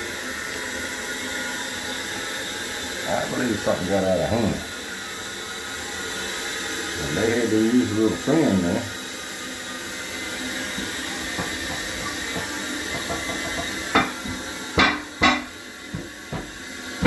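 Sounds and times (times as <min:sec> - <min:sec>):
steady hiss: 0:02.1 - 0:17.0
sharp knocks: 0:11.4 - 0:16.5.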